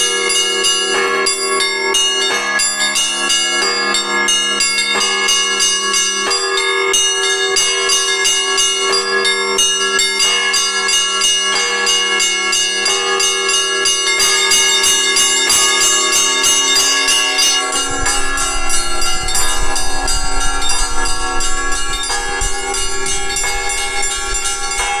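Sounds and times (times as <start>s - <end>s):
church bells pealing: 0.0s - 25.0s
low rumble: 17.7s - 25.0s.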